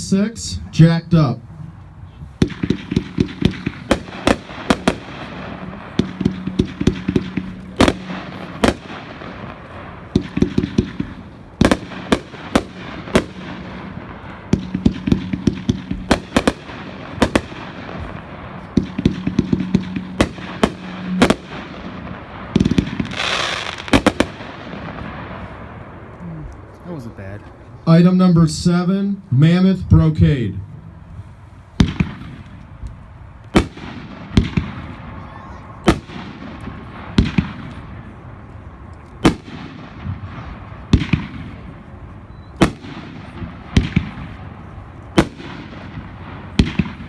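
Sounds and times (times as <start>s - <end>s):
fireworks hissing: 2.3s - 25.5s
fireworks launch thumps and bursts: 2.4s - 13.6s, 31.8s - 32.7s, 33.5s - 35.0s, 40.9s - 41.6s.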